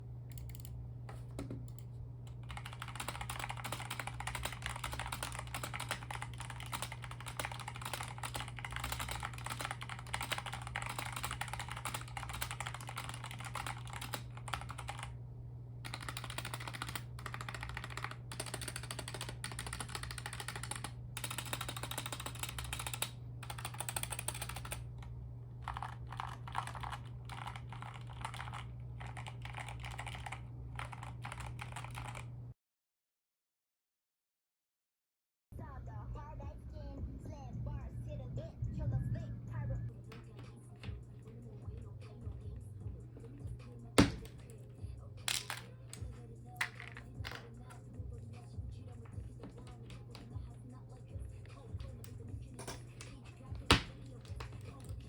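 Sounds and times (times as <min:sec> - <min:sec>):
steady low hum: 0:00.0 - 0:32.5, 0:35.6 - 0:55.0
mechanical keyboard key clacks: 0:01.7 - 0:15.1, 0:15.9 - 0:24.8.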